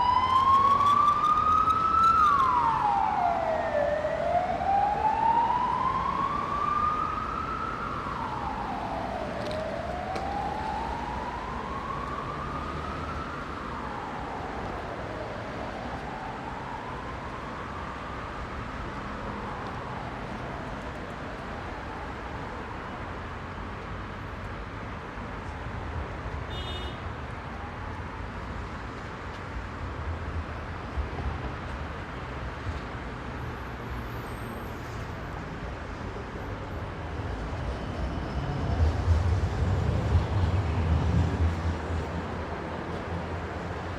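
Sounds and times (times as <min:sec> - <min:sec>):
emergency siren wailing: 0:00.0 - 0:22.9, 0:37.2 - 0:43.9
heavy road traffic: 0:00.0 - 0:43.9.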